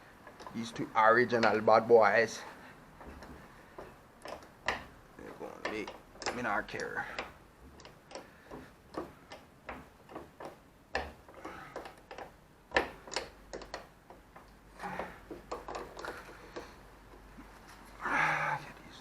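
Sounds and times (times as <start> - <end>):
metallic clicks of hand tools: 3.0 - 16.7.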